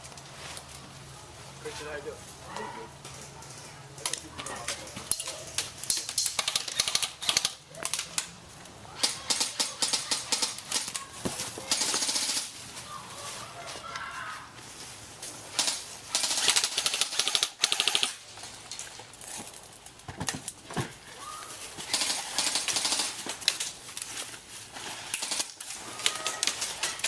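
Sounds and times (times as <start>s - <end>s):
airsoft guns firing full auto: 5.9s - 8.1s, 9.0s - 11.0s, 11.7s - 12.5s, 15.5s - 18.2s, 21.9s - 23.7s, 25.1s - 27.0s.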